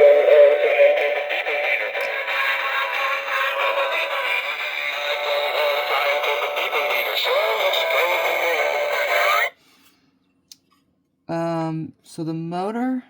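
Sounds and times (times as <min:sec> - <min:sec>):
toy singing synthetic melody: 0:00.0 - 0:09.5.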